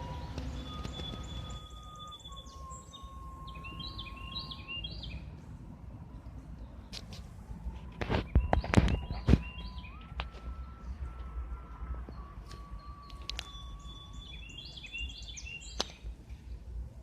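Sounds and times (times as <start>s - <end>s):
long whistle-like notes: 0.0s - 5.0s, 8.0s - 15.6s.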